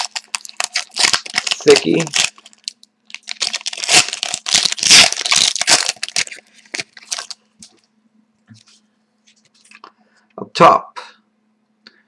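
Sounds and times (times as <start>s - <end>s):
foil wrapper tearing and crinkling: 0.0s - 7.7s.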